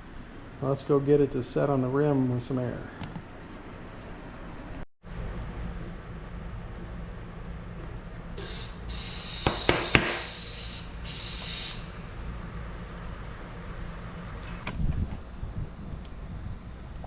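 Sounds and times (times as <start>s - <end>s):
compressed air hissing into tire: 8.4s - 12.5s.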